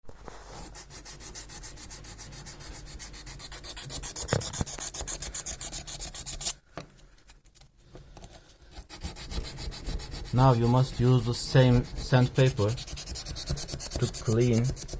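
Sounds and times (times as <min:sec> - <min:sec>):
sandpaper rubbing on metal: 0:08.8 - 0:14.9.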